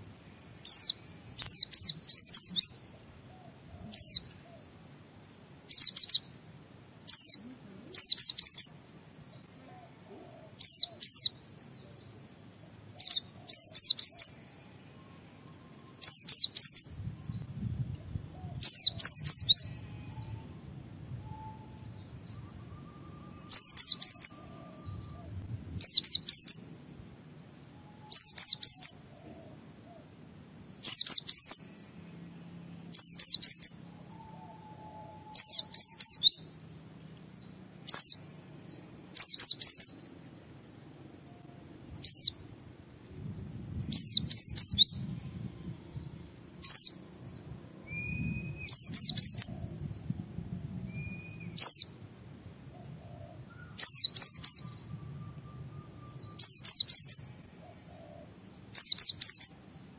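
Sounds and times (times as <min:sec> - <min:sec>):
white-eye twittering song: 0:03.9 - 0:06.3, 0:10.6 - 0:17.5, 0:18.4 - 0:27.0, 0:27.6 - 0:29.2, 0:30.7 - 0:32.0, 0:32.9 - 0:40.4, 0:43.4 - 0:52.1, 0:53.5 - 0:59.9.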